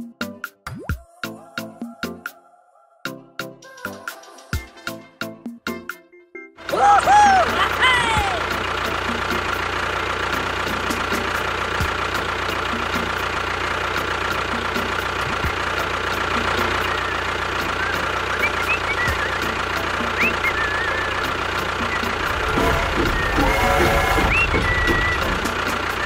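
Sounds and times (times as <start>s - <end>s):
small engine knocking: 7.1s - 26.0s
short high chirps: 16.8s - 26.0s.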